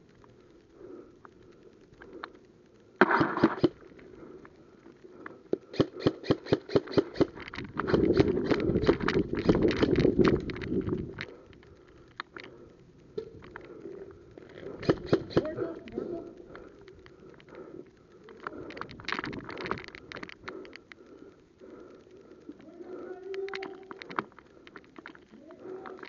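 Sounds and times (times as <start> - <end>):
airsoft gun shots: 3.0 - 3.8, 5.7 - 9.6, 14.8 - 15.5.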